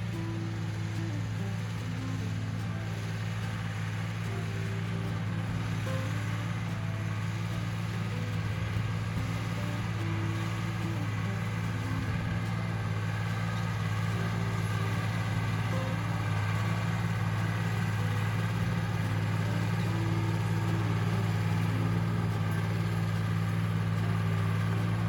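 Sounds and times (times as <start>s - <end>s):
tractor engine running: 0.0s - 25.0s.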